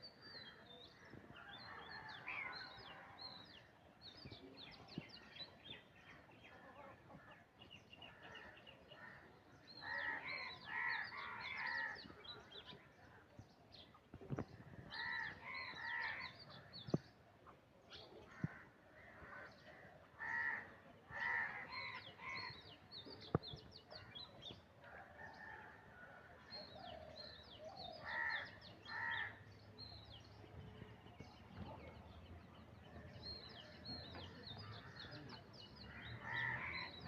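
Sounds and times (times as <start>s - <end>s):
small birds chirping: 0.0s - 37.0s
birds calling: 26.5s - 37.0s.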